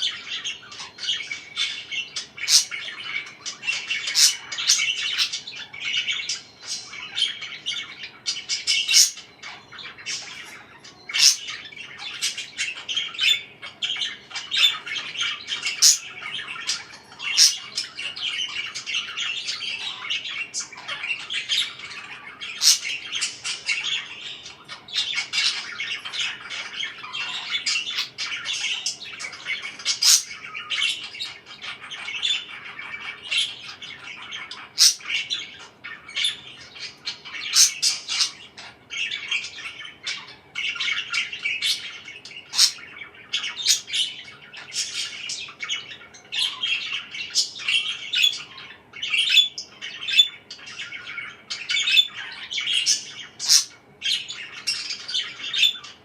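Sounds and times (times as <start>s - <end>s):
parakeets chirping and twittering: 0.0s - 56.0s
shrill parakeet squawks: 0.0s - 56.0s.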